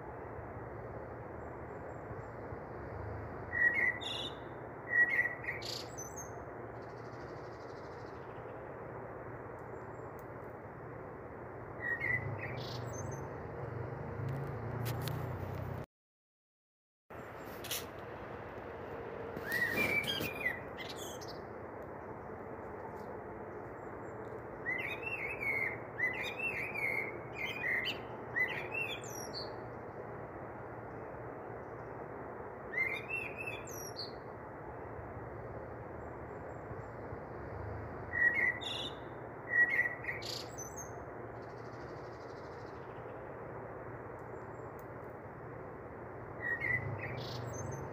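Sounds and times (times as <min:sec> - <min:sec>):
small birds chirping: 0:19.4 - 0:21.5, 0:46.4 - 0:47.9.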